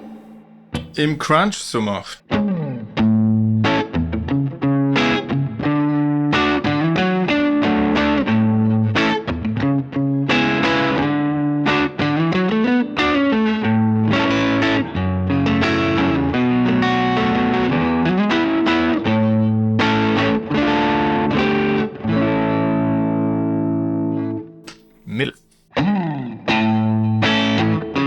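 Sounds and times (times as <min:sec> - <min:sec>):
overdriven electric guitar chords: 0:25.8 - 0:28.0.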